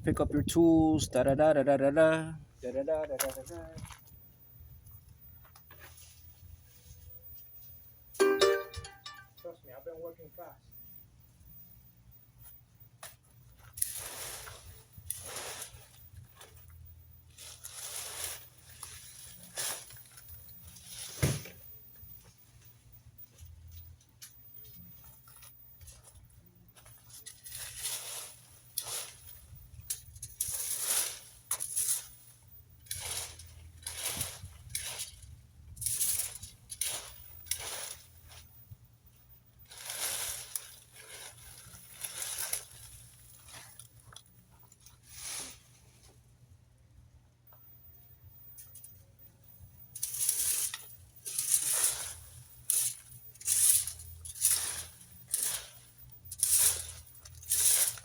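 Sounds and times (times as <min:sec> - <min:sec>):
dry leaves being raked: 0:13.7 - 0:16.6, 0:17.3 - 0:21.4, 0:26.9 - 0:29.6, 0:30.2 - 0:38.5, 0:39.6 - 0:44.1, 0:44.9 - 0:46.0, 0:50.0 - 0:58.0.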